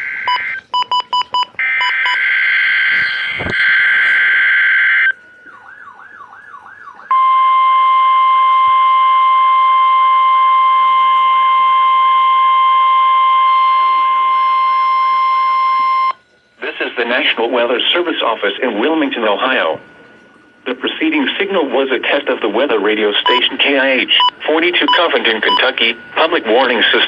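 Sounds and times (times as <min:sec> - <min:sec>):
steady warning alarm tone: 0:00.0 - 0:16.2, 0:17.1 - 0:27.0
short beeps: 0:23.2 - 0:23.5, 0:24.2 - 0:26.1.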